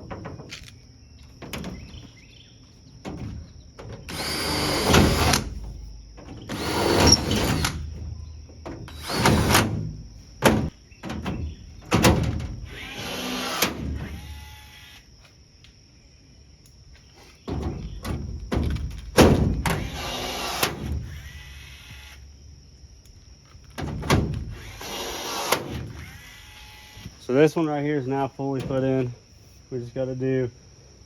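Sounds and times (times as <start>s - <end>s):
power drill running: 4.1s - 5.5s, 6.5s - 7.8s, 12.7s - 15.0s.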